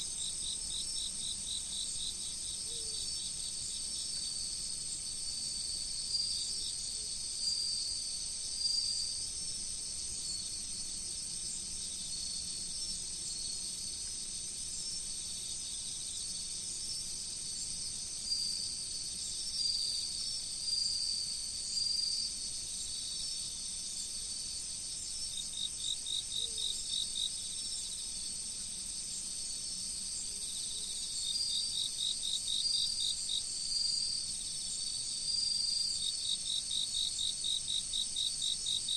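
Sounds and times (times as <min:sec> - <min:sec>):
insect rapid chirps: 0:14.6 - 0:38.9.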